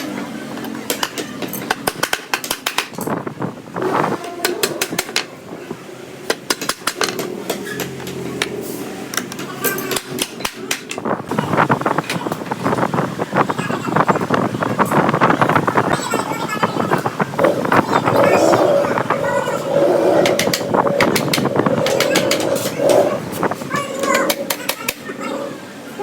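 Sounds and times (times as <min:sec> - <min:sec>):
steady low drone: 0:17.1 - 0:24.7
sharp knocks and clicks: 0:20.2 - 0:23.0.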